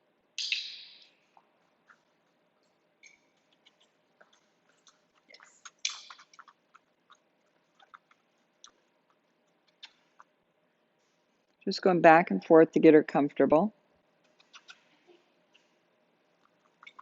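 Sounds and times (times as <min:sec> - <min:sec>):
dog chewing treats: 0:01.8 - 0:10.3.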